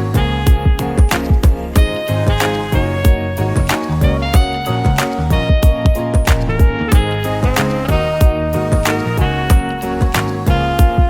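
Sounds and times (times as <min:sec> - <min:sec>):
steady drum beat: 0:00.0 - 0:11.0
plucked guitar-like notes: 0:03.6 - 0:09.2.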